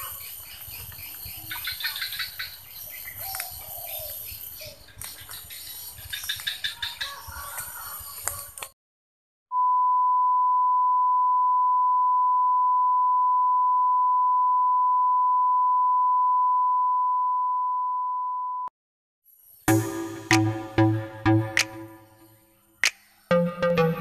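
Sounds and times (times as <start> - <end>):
steady pure beep tone: 9.5 - 18.7.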